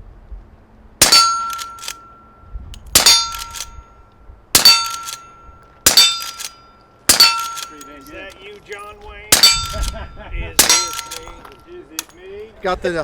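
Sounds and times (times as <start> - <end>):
steel target ringing: 1.0 - 8.2, 9.3 - 11.7
suppressed rifle shots: 9.3 - 10.0, 10.6 - 11.4.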